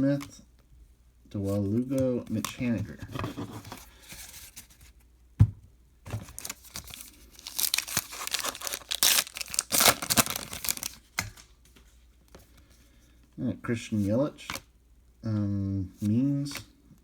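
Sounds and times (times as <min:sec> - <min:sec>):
wrapper tearing and crinkling: 0:06.3 - 0:11.0.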